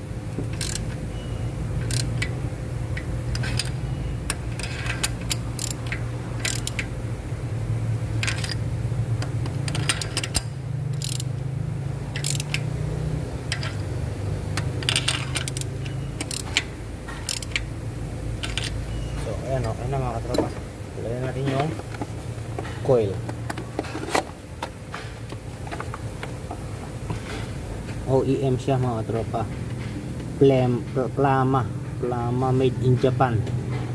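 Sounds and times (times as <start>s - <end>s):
steady low hum: 0.0s - 33.9s
metallic clicks of hand tools: 0.5s - 1.0s, 1.8s - 2.3s, 3.0s - 6.9s, 8.2s - 8.6s, 9.2s - 11.3s, 12.1s - 12.7s, 13.5s - 13.9s, 14.5s - 17.7s, 18.4s - 18.8s.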